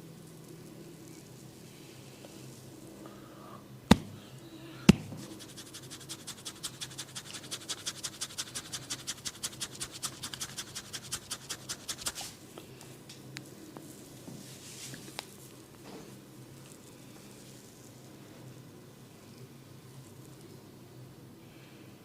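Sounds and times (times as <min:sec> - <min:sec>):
sharp cracks: 0:03.9 - 0:04.3
comb scratching through hair: 0:05.0 - 0:12.4.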